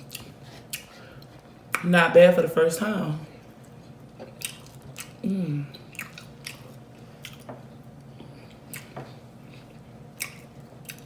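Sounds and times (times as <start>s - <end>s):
chewing and biting: 0.0s - 1.5s, 3.6s - 5.2s, 5.8s - 7.6s, 8.5s - 11.0s.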